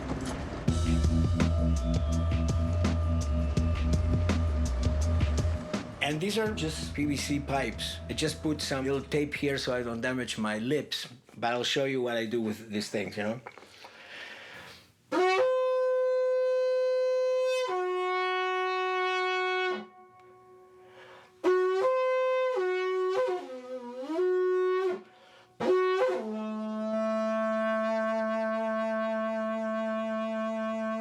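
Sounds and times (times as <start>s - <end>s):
pipe blown like a horn: 0.7s - 9.4s, 15.1s - 31.0s
breaths: 13.6s - 15.0s, 20.8s - 21.4s, 25.1s - 25.6s.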